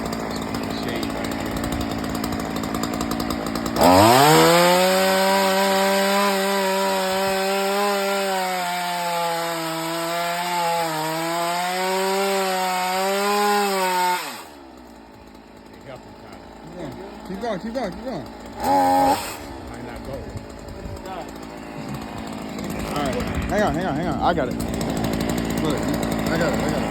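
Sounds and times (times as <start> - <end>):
chainsaw cutting wood: 0.0 - 26.9.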